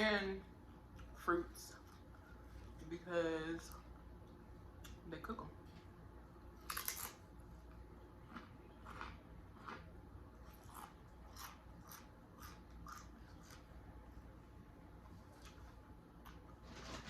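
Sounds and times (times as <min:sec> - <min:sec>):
person chewing crunchy food: 0:06.6 - 0:13.9.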